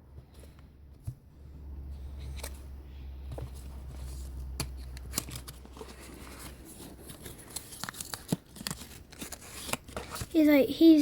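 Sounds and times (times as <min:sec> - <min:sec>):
packaging rustling and crinkling: 0:03.6 - 0:10.6.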